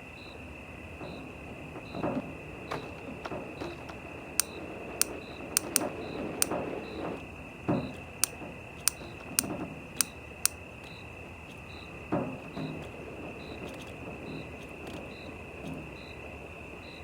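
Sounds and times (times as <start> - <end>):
sharp clicks: 4.4 - 5.9.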